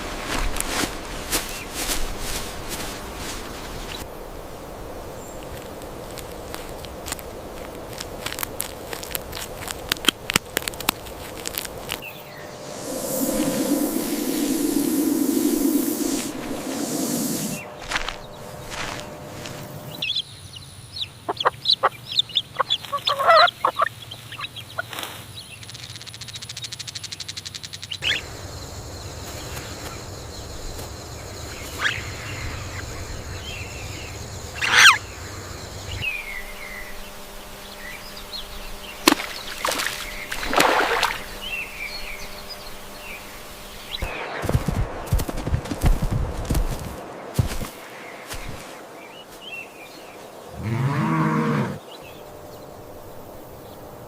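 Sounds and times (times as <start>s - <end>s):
poultry calling: 22.6s - 23.9s, 50.5s - 51.8s.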